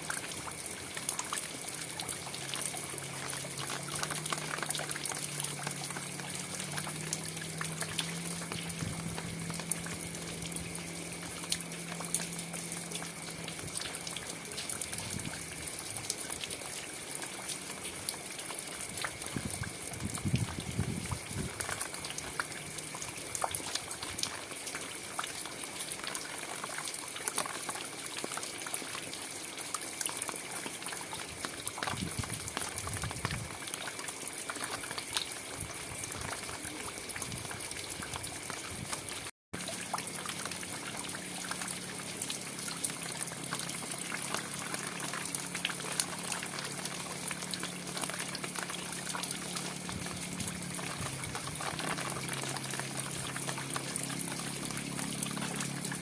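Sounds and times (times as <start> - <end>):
low steady hum: 0.0 - 24.3
rain falling: 0.0 - 56.0
water trickling: 0.0 - 56.0.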